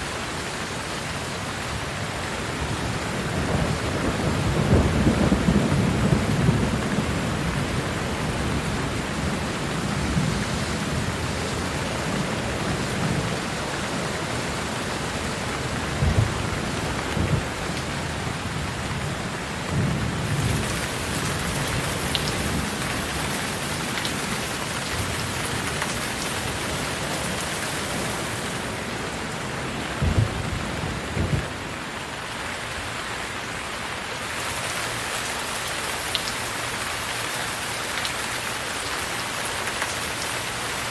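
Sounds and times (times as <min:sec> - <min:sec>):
heavy rain: 0:00.0 - 0:40.9
low rumbles of thunder: 0:02.9 - 0:13.4, 0:15.8 - 0:31.8.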